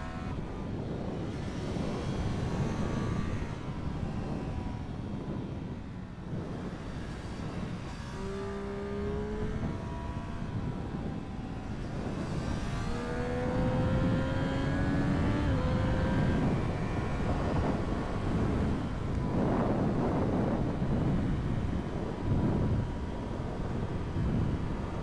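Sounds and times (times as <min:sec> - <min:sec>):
wind rush on microphone: 0:00.0 - 0:25.0
motorcycle engine under throttle: 0:06.4 - 0:25.0.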